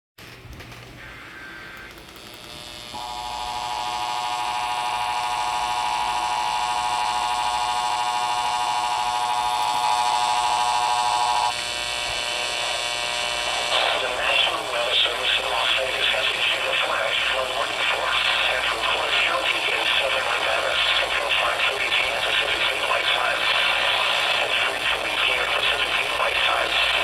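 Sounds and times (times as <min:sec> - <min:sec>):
faint radio hiss: 0:02.5 - 0:27.0.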